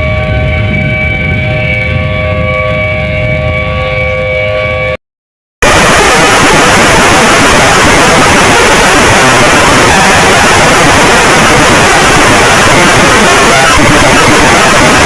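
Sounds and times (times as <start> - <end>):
loud harsh static noise: 5.6 - 15.0.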